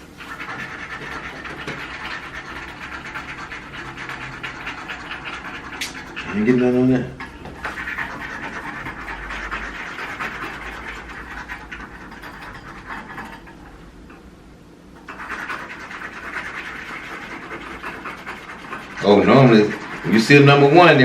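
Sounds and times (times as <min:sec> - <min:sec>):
scratching lottery tickets: 0:15.0 - 0:21.0.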